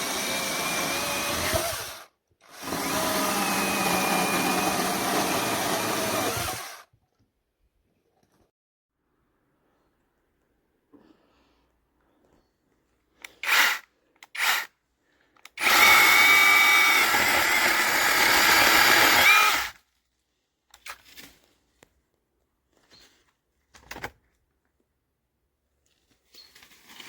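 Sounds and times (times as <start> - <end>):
electric chainsaw motor whining: 0.0 - 6.8, 15.6 - 19.8.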